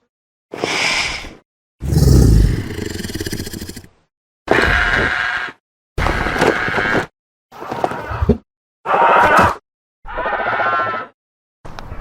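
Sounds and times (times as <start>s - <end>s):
pterosaur call: 1.8s - 3.8s.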